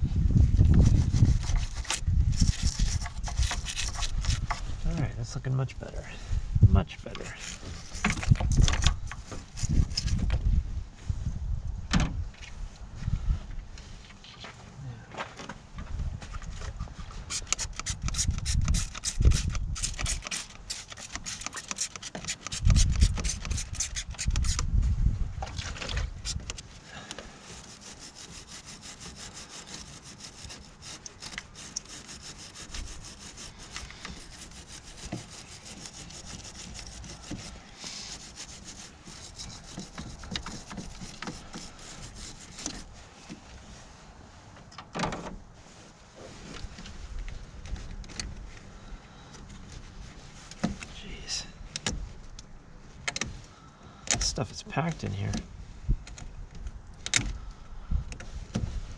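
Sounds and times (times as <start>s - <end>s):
stiff brush scrubbing metal: 0.6s - 4.9s, 7.0s - 10.3s, 17.1s - 24.8s, 25.9s - 43.4s.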